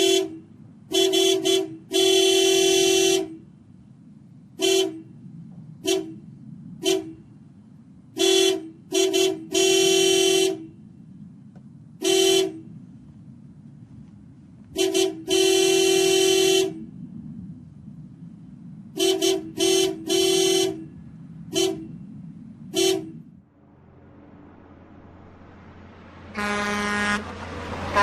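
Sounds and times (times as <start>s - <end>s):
horn honking: 0.0s - 3.5s, 4.5s - 5.2s, 5.8s - 7.4s, 8.1s - 10.8s, 12.0s - 12.7s, 14.7s - 16.9s, 18.9s - 22.1s, 22.7s - 23.4s, 26.3s - 28.0s.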